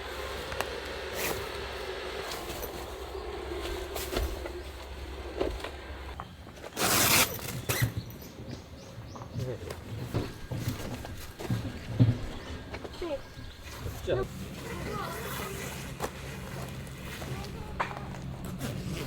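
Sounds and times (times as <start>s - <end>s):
steady low hum: 0.0s - 6.2s, 9.8s - 19.0s
nylon fabric rustling and scraping: 1.0s - 5.1s, 6.7s - 8.0s, 13.8s - 19.0s.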